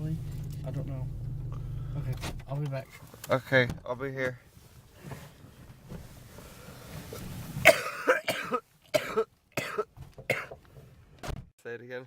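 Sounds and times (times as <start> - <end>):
person coughing harshly: 7.6 - 10.6.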